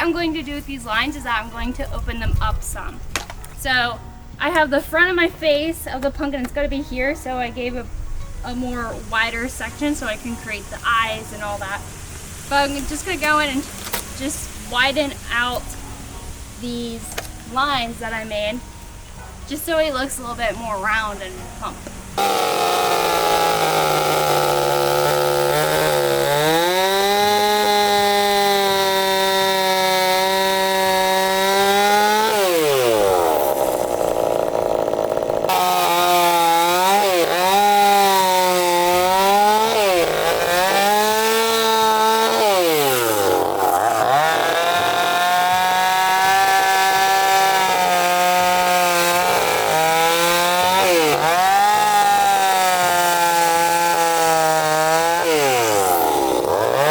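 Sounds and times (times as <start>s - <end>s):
chainsaw cutting wood: 8.5s - 15.8s, 21.8s - 56.9s.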